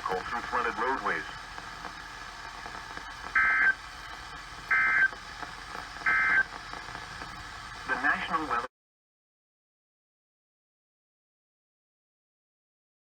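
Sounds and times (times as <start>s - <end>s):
radio hiss: 0.0s - 8.7s
data tone bursts: 3.1s - 5.2s, 5.8s - 8.6s.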